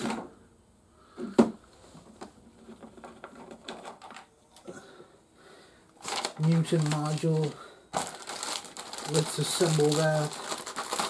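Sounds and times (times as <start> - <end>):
packaging rustling: 6.0 - 11.0.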